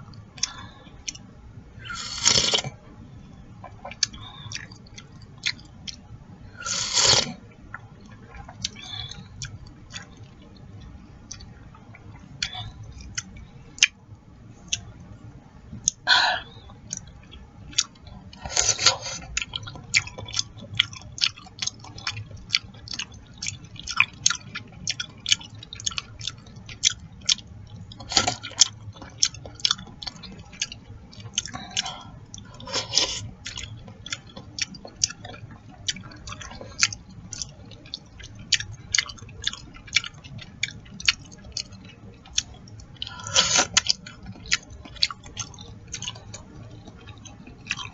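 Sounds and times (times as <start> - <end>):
wet chewing and lip smacking: 0.1 - 2.8, 3.6 - 6.1, 6.7 - 14.0, 14.6 - 47.9
slurping soup: 1.8 - 2.7, 6.6 - 7.4, 18.4 - 19.3, 32.5 - 33.3, 43.2 - 43.8.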